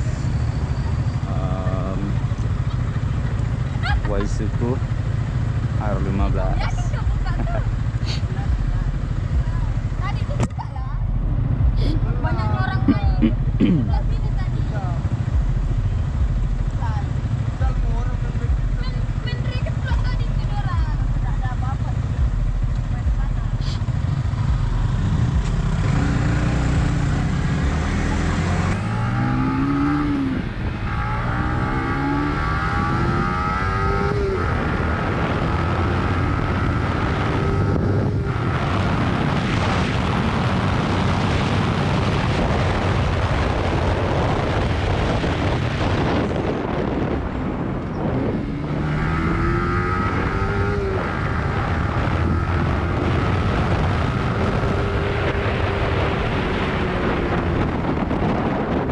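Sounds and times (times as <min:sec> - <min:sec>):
motorcycle engine accelerating: 0:00.0 - 0:58.9
wind noise on microphone: 0:22.2 - 0:58.9.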